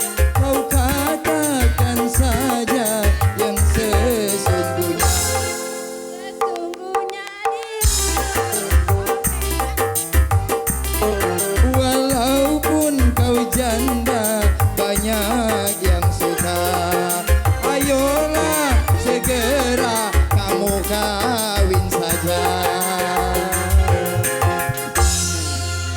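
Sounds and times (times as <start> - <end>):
drum beat with heavy bass: 0.0 - 6.0, 7.7 - 25.9
wavering melody line: 0.0 - 7.1, 7.8 - 25.9.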